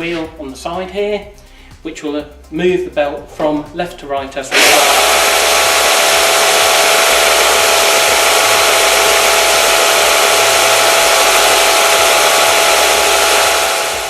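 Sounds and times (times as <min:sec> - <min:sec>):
sander motor whirring: 0:04.5 - 0:14.0.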